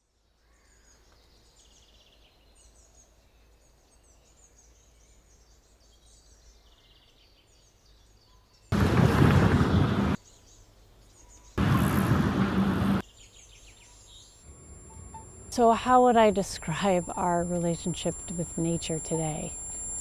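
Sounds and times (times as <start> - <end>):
birds chirping: 8.7 - 10.2, 11.1 - 20.0
loud rushing noise: 8.7 - 10.2, 11.6 - 13.0
low background rumble: 11.6 - 13.0, 14.5 - 20.0.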